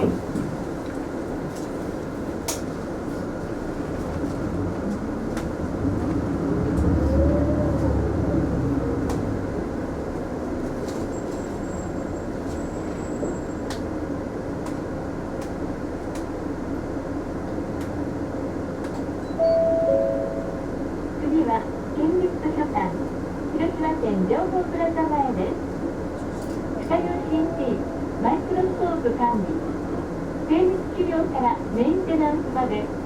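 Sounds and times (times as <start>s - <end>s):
bus engine and road noise: 0.0s - 33.0s
short steady tone: 19.3s - 20.8s.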